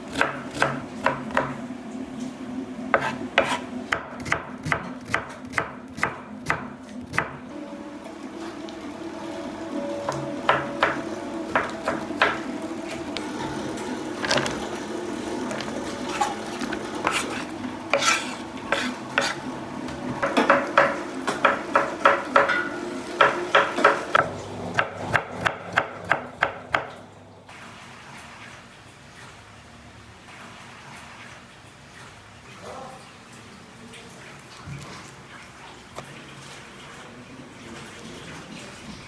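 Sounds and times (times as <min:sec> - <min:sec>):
utensils clattering on cookware: 0:20.2 - 0:24.2.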